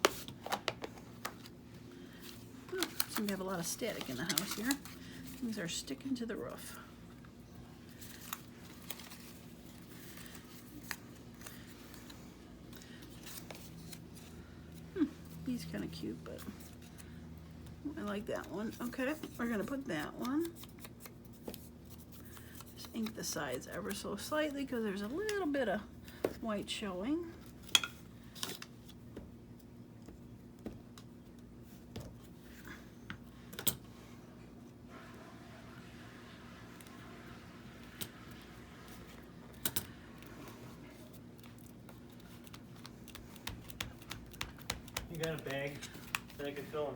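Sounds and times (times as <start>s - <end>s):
low steady hum: 0.0s - 46.9s
paper rustling: 2.1s - 5.3s, 7.9s - 14.4s, 39.8s - 46.9s
paper clicks: 41.4s - 46.5s.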